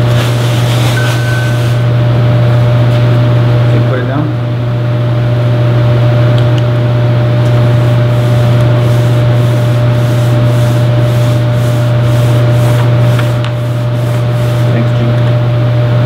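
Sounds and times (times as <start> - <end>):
rhythmic rubbing strokes: 0.0 - 2.0, 7.6 - 15.1
low machine hum: 0.0 - 16.0.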